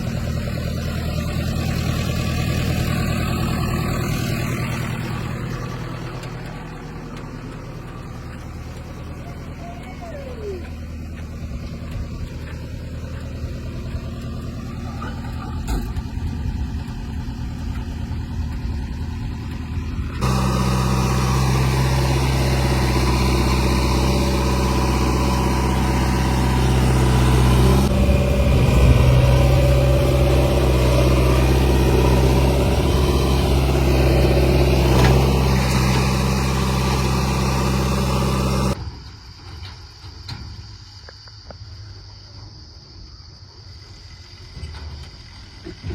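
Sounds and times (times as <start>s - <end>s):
diesel engine running: 0.0s - 40.0s.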